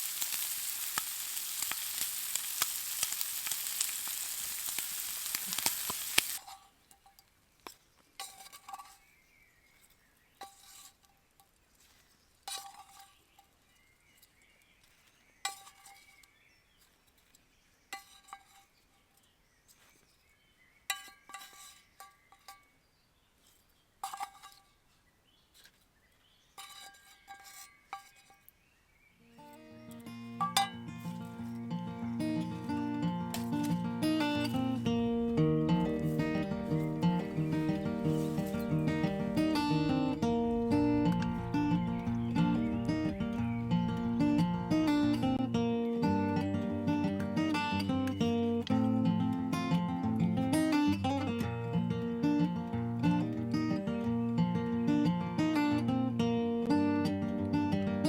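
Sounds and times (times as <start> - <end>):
food sizzling in a pan: 0.0 - 6.4, 35.7 - 45.2.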